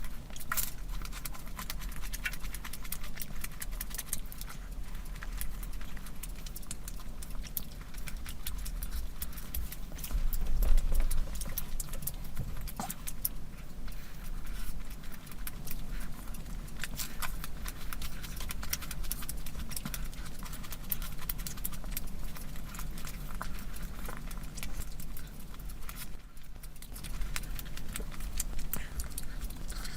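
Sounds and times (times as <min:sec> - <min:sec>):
chewing and mouth clicks: 0:00.0 - 0:29.9
low steady hum: 0:00.0 - 0:29.9.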